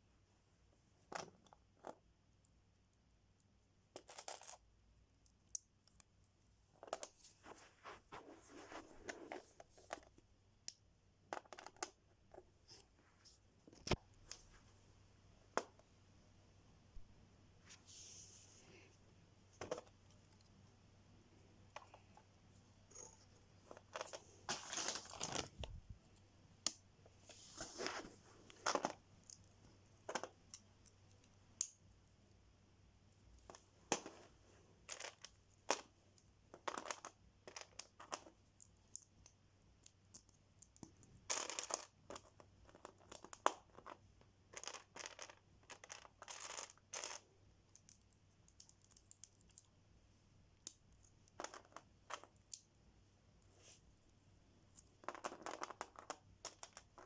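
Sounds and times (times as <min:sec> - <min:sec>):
small clicks and taps: 0:44.6 - 0:49.8.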